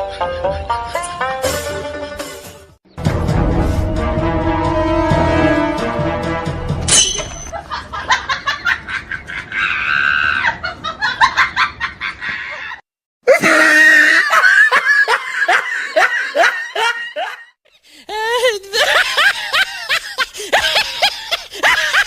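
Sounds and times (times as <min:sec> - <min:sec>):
shrill laugh in bursts: 0:07.5 - 0:12.8, 0:13.6 - 0:17.5, 0:18.3 - 0:22.0
rapid laughing: 0:18.1 - 0:22.0.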